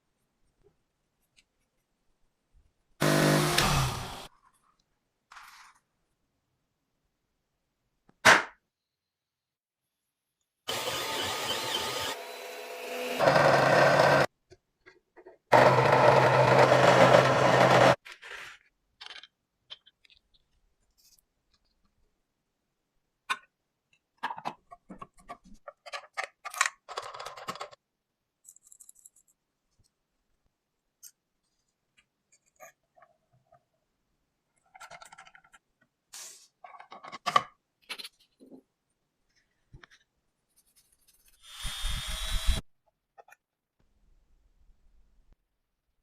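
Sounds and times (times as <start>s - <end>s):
small electric motor running: 10.7s - 14.3s, 41.4s - 42.6s.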